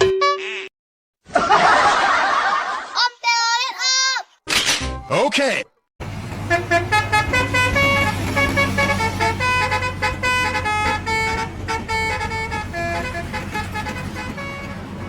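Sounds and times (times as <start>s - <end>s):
musical bus horn melody: 6.0s - 15.0s.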